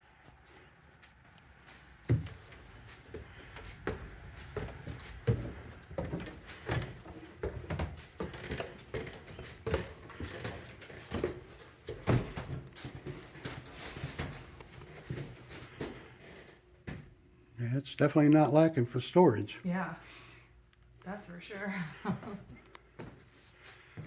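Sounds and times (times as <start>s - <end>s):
footsteps climbing stairs: 0.4s - 17.2s.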